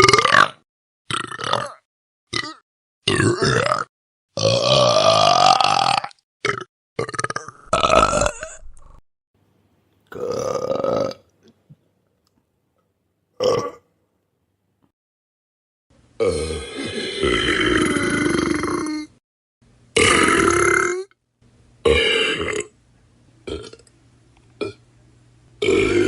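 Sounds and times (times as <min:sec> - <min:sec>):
person burping: 0:00.0 - 0:09.0, 0:10.1 - 0:11.2, 0:13.4 - 0:13.9, 0:16.2 - 0:19.2, 0:20.0 - 0:21.2, 0:21.8 - 0:22.7, 0:23.5 - 0:23.8, 0:25.6 - 0:26.0.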